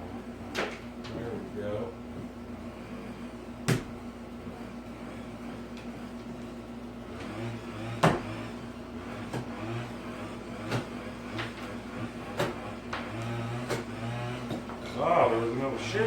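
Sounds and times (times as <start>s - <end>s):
steady low hum: 0.0s - 16.0s
sharp knocks and clunks on wall: 3.6s - 4.0s, 7.8s - 8.5s, 10.6s - 14.8s.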